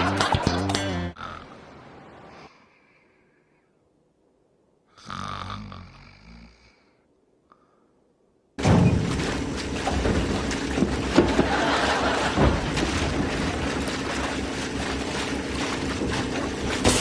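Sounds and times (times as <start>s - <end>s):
person snoring: 1.2s - 1.6s, 4.9s - 7.0s.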